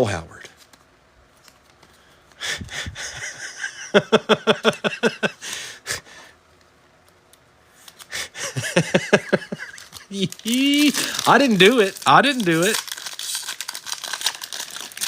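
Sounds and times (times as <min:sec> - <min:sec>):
man laughing: 0:02.6 - 0:05.5, 0:08.2 - 0:12.7.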